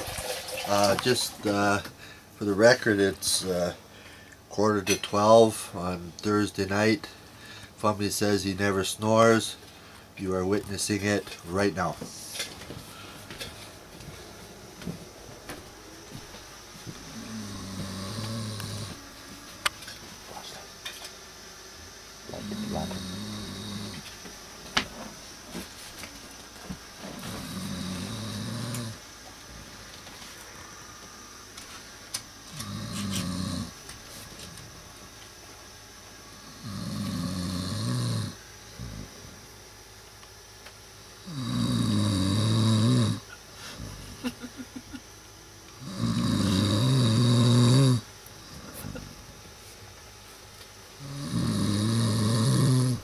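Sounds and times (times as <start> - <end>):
man snoring: 17.0 - 19.0, 22.3 - 24.0, 27.2 - 29.0, 32.5 - 33.8, 36.4 - 39.2, 41.2 - 44.1, 45.8 - 49.2, 51.0 - 53.0.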